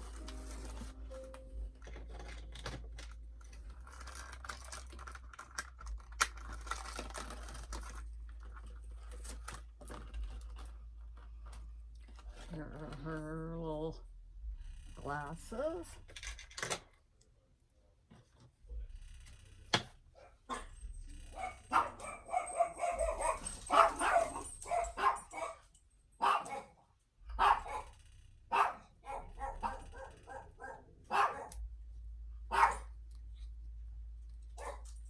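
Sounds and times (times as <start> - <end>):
dog barking: 20.2 - 31.6, 32.5 - 33.0, 34.6 - 35.0.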